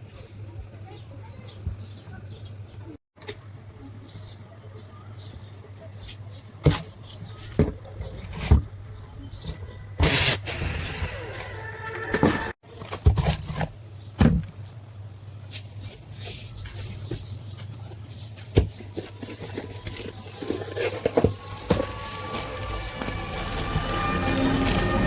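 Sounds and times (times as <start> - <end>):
rushing scraping noise: 20.3 - 25.0
low hum: 20.5 - 25.0.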